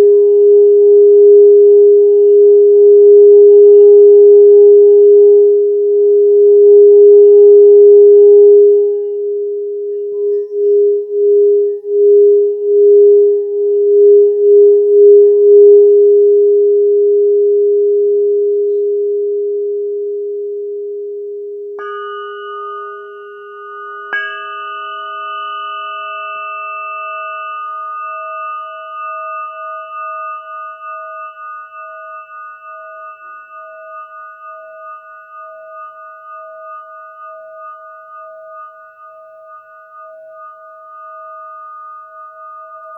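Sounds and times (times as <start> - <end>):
crystal singing bowl ringing: 0.0 - 42.9
high-pitched crystal instrument struck: 21.8 - 42.9.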